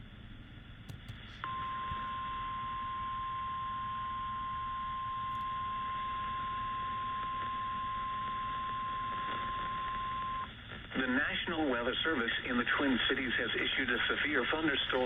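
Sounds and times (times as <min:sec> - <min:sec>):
radio hiss: 0:09.3 - 0:15.0.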